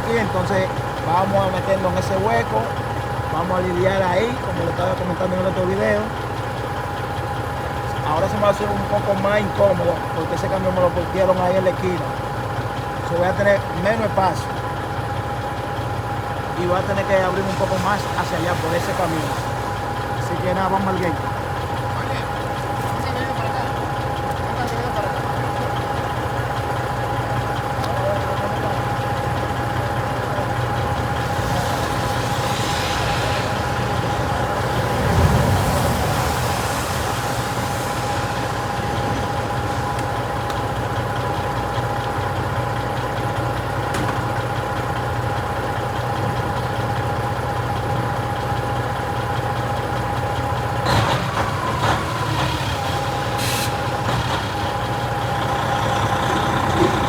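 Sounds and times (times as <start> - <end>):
truck engine running: 0.0 - 57.0
hiss: 16.7 - 21.5, 28.6 - 42.0, 50.7 - 57.0.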